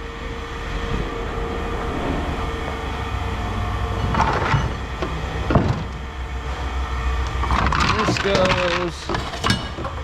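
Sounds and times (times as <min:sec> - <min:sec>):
knocks or clatters: 0:08.4 - 0:10.0.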